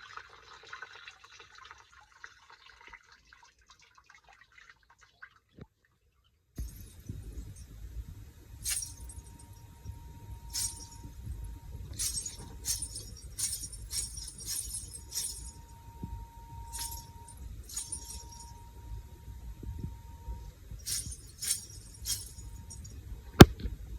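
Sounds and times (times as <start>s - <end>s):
faint steady tone: 6.6s - 23.9s
small hard objects clinking: 8.6s - 9.4s, 10.5s - 11.0s, 12.0s - 15.6s, 16.7s - 18.5s, 20.9s - 22.8s.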